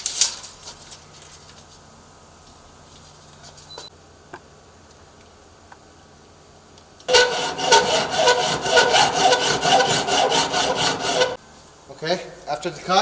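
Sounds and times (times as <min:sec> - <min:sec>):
saw rasping through metal: 0:07.1 - 0:11.4.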